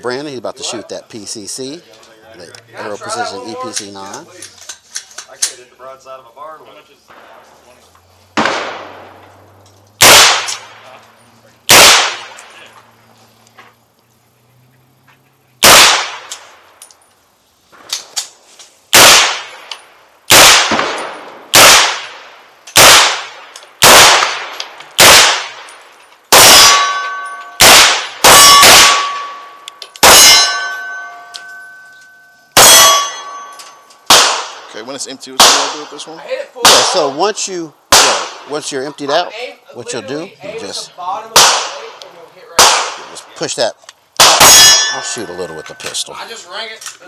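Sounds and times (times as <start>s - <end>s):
carbine gunshots: 7.1s - 11.0s, 11.7s - 12.7s, 15.6s - 16.8s, 18.9s - 31.8s, 32.6s - 38.8s, 41.3s - 43.4s, 44.2s - 46.0s
steel target ringing: 26.3s - 34.6s, 44.2s - 46.0s.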